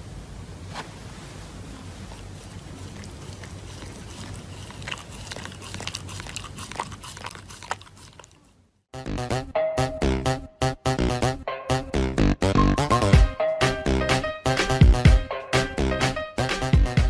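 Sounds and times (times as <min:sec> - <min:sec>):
low background noise: 0:00.0 - 0:08.9
dog chewing with crunches: 0:01.7 - 0:08.6.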